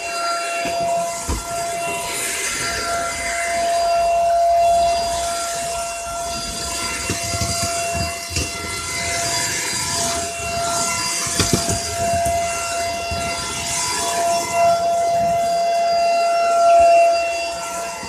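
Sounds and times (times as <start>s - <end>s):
stick vacuum running: 0.0s - 18.0s
knocks and crackles on floor: 0.6s - 2.8s, 6.1s - 16.0s.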